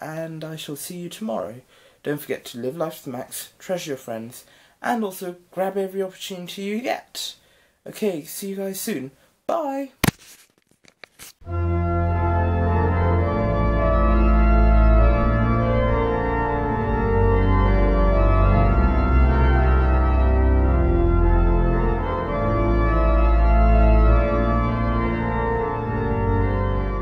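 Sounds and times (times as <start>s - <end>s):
organ chords: 11.5s - 27.0s.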